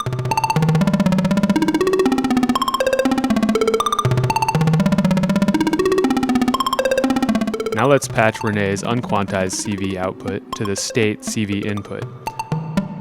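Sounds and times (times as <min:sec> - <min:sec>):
synthesizer plucked sequence: 0:00.0 - 0:13.0.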